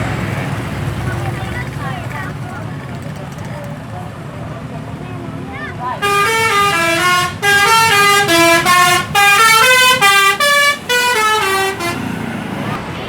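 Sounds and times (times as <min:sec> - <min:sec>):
multi-tone air horn melody: 0:06.0 - 0:12.2.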